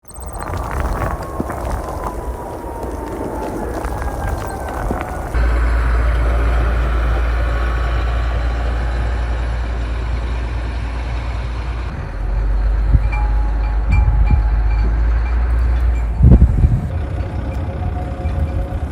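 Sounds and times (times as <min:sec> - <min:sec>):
low rumble of vehicle traffic: 0:00.3 - 0:18.9.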